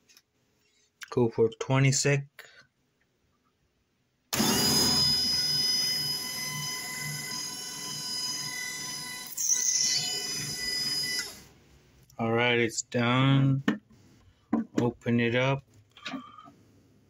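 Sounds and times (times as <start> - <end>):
disc repair machine whine: 4.4 - 11.5.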